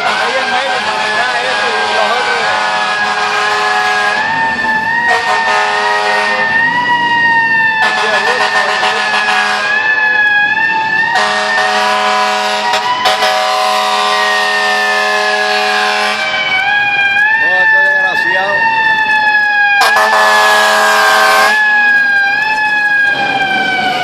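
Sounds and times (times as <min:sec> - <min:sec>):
fire truck air horn blasts: 0:00.0 - 0:04.4, 0:05.0 - 0:06.6, 0:07.8 - 0:10.0, 0:11.1 - 0:16.4, 0:19.8 - 0:21.7
siren wailing: 0:00.0 - 0:24.0.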